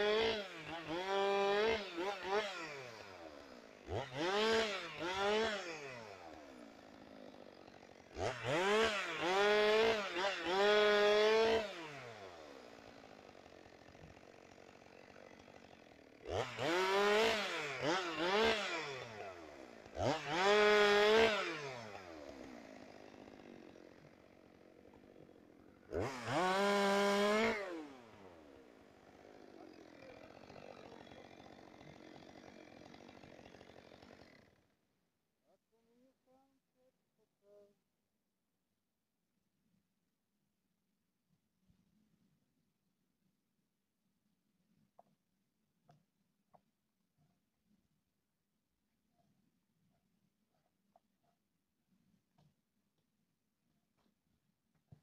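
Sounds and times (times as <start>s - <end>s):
chainsaw revving: 0.0s - 34.7s.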